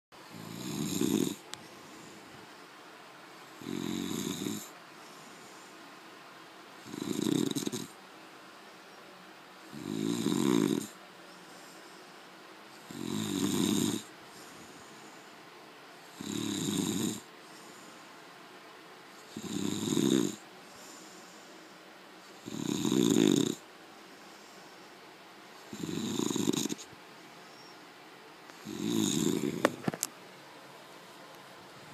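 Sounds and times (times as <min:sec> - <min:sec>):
loud pulsing snore: 0:00.3 - 0:01.5, 0:03.6 - 0:04.8, 0:06.8 - 0:08.0, 0:09.7 - 0:11.0, 0:12.8 - 0:14.9, 0:16.1 - 0:17.3, 0:19.3 - 0:21.5, 0:22.4 - 0:23.7, 0:25.7 - 0:26.9, 0:28.6 - 0:29.8.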